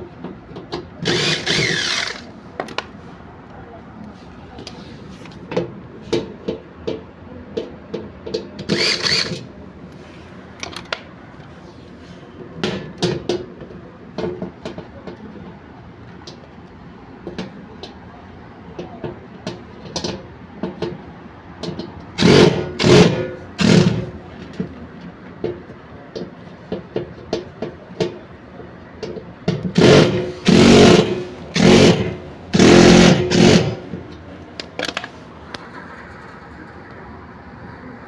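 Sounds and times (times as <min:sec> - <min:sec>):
clattering bursts: 0:01.0 - 0:02.3, 0:08.7 - 0:09.4, 0:22.2 - 0:24.2, 0:29.7 - 0:35.2.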